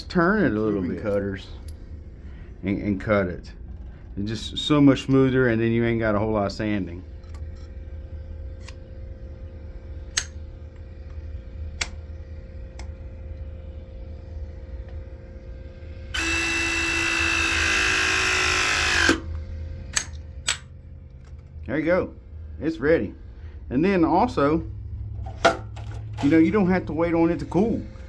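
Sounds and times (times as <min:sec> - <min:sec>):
steady low hum: 0:00.0 - 0:28.0
press tool running: 0:16.1 - 0:19.3.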